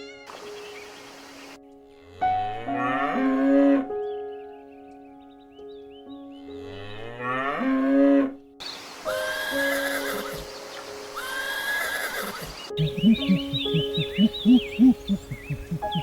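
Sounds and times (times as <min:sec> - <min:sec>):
background music with held notes: 0:00.0 - 0:16.0
farm animal calls: 0:09.2 - 0:10.5, 0:11.1 - 0:16.0.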